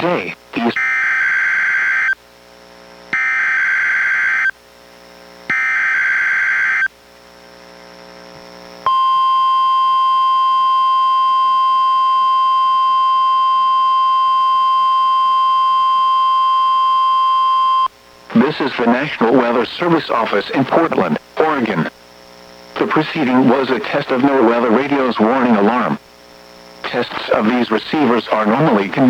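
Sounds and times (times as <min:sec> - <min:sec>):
steady warning alarm tone: 0:00.7 - 0:02.2, 0:03.2 - 0:04.6, 0:05.5 - 0:06.9, 0:08.9 - 0:17.9.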